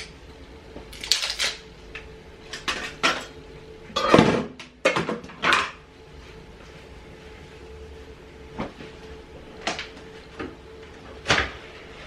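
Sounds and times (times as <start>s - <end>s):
dishes and utensils clattering: 4.0s - 5.8s.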